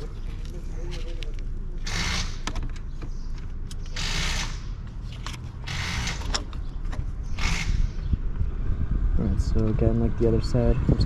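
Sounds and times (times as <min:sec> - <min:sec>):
hand ratchet clicking: 0:03.9 - 0:04.6, 0:05.7 - 0:06.5, 0:07.4 - 0:08.0
steady low rumble: 0:04.4 - 0:11.0.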